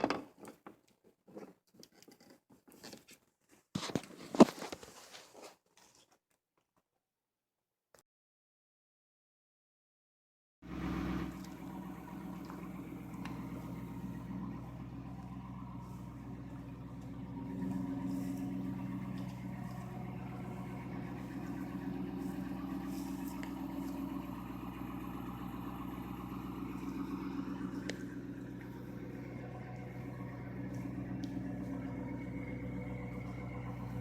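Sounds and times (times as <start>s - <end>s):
car engine idling: 10.7s - 34.0s.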